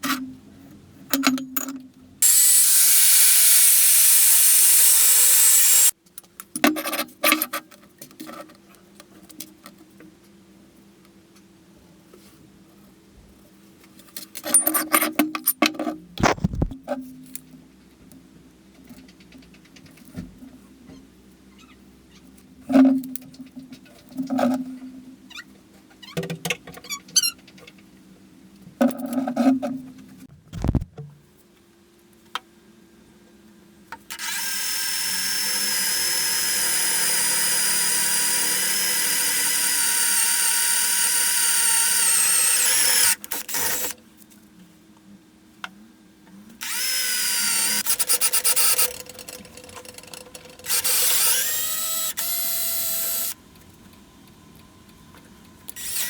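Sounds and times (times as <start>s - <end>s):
power tool motor whining: 2.2s - 5.9s, 34.1s - 43.9s, 46.6s - 49.0s, 50.6s - 53.4s, 55.8s - 56.0s
knocks and clatter: 16.2s - 16.8s.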